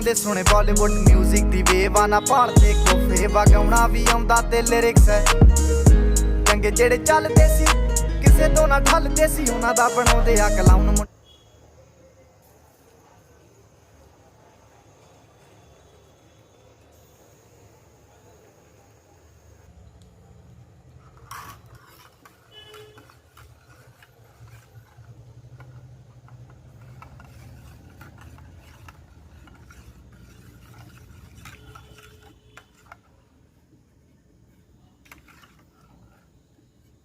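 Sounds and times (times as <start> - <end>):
spoon scraping a pan: 21.1 - 33.2, 35.0 - 36.4.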